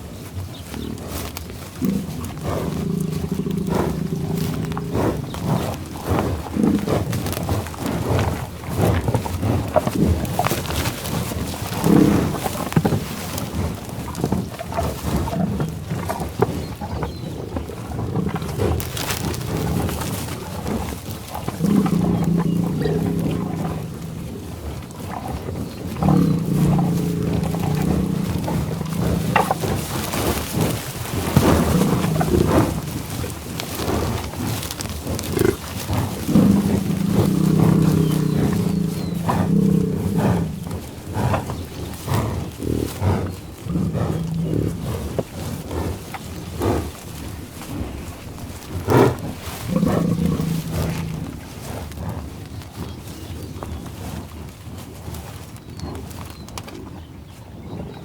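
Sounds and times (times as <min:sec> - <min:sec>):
buffalo grunts and breathing: 0:00.0 - 0:58.0
buffalo bellowing: 0:01.8 - 0:07.1, 0:16.9 - 0:51.6.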